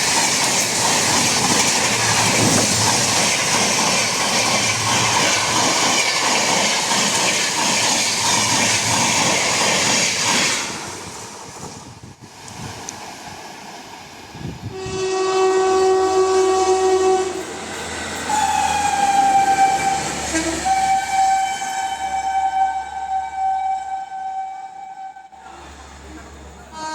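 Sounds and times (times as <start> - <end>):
train wheels clattering: 0.0 - 11.8
locomotive horn blasts: 14.7 - 17.5, 18.3 - 25.6, 26.7 - 26.9.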